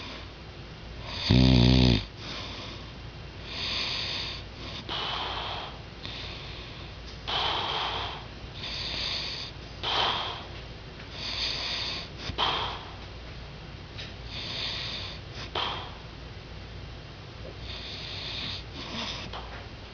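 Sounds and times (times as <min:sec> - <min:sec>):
man snoring: 0:01.1 - 0:02.1.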